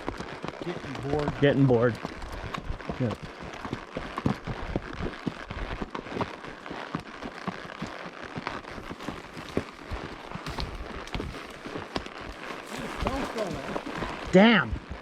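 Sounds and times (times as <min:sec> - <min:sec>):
footsteps crunching on dry ground: 0:00.0 - 0:15.0
steady rustling noise: 0:08.4 - 0:15.0.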